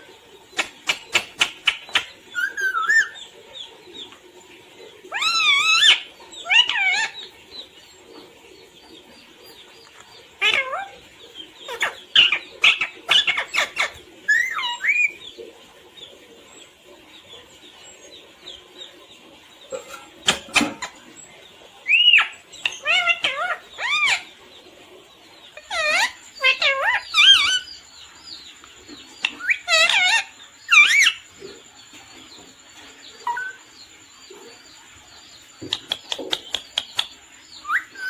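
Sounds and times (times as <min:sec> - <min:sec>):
parrot screeching calls: 0:05.1 - 0:07.2, 0:21.9 - 0:24.3, 0:25.6 - 0:27.7, 0:29.4 - 0:31.2.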